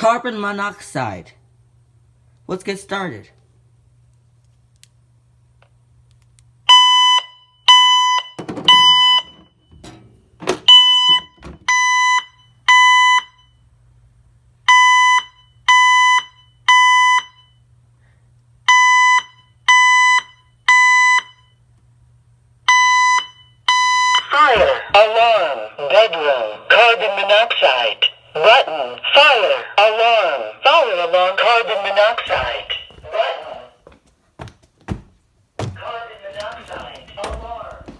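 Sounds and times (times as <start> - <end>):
security alarm beeping: 6.7 - 9.9, 10.6 - 13.6, 14.7 - 17.6, 18.7 - 21.6, 22.7 - 24.9
knocks and handling noises: 32.2 - 37.9.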